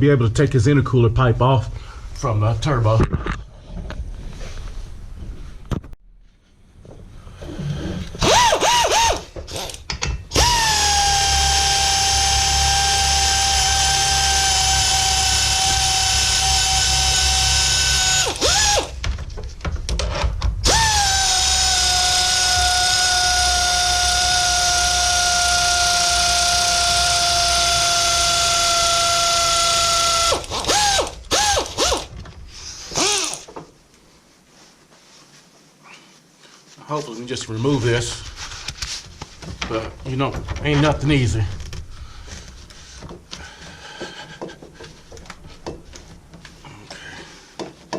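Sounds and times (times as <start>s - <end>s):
cordless power driver whirring: 8.2s - 19.0s, 20.6s - 32.2s, 32.9s - 33.5s.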